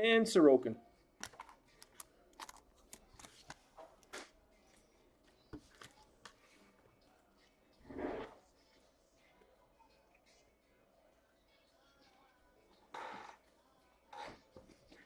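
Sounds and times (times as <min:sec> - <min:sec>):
trading cards clicking and rustling: 0:01.2 - 0:04.2.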